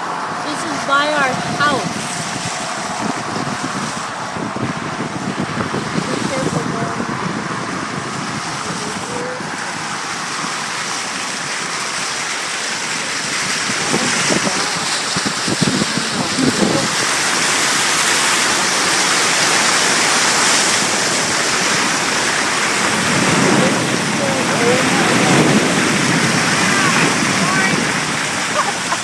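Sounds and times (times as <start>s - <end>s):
water rushing: 0.0s - 29.0s.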